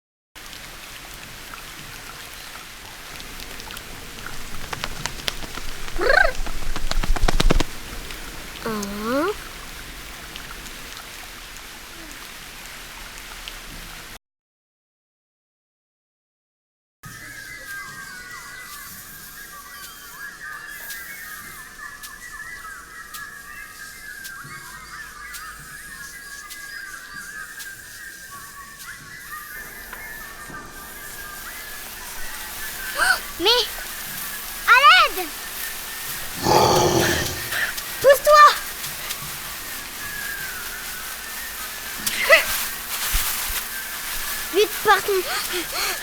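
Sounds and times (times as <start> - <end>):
rain hissing and pattering: 0.4 - 14.2, 23.2 - 46.0.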